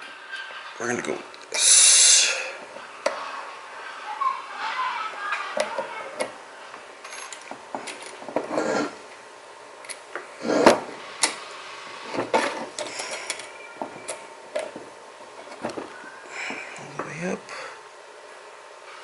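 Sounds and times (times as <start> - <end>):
parts clicking and scraping: 7.0 - 9.0, 12.1 - 16.0.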